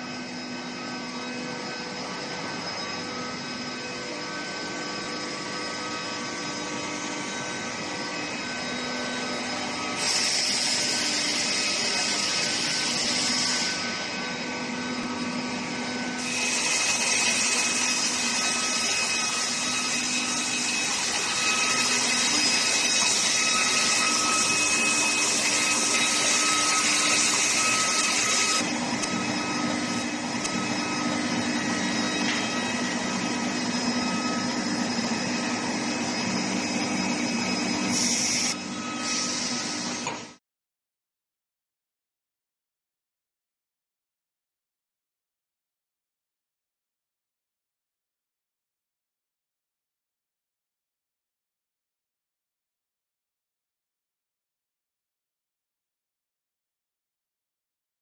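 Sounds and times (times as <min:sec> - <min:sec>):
machinery noise: 0:00.0 - 0:40.4
whining tones: 0:00.0 - 0:40.4.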